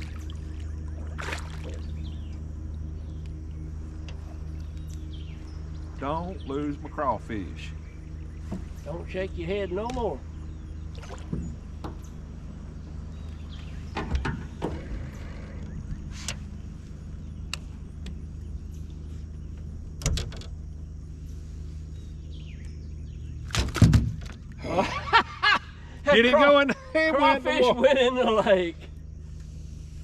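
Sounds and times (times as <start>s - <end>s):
steady low hum: 0.0s - 30.0s
knocks and thumps in boat: 11.0s - 12.2s, 13.9s - 14.8s, 23.4s - 24.6s.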